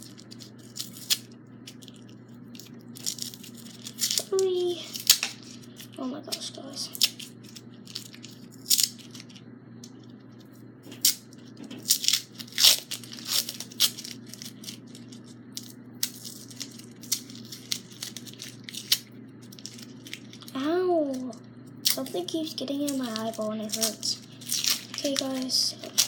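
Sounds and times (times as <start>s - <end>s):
tape and wrapping tearing: 0.0s - 2.0s, 2.6s - 5.9s, 6.9s - 9.4s, 11.8s - 20.6s, 22.9s - 26.0s.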